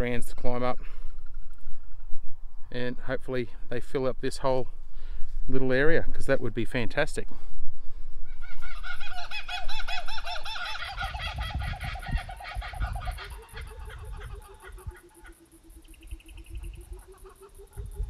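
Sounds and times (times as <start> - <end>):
birds calling: 8.3 - 18.0
high bird trill: 8.3 - 18.0.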